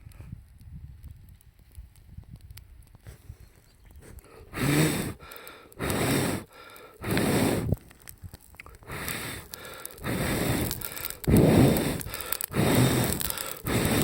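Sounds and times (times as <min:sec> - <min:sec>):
campfire crackling: 0:00.0 - 0:14.0
air blown into fire: 0:04.0 - 0:14.0.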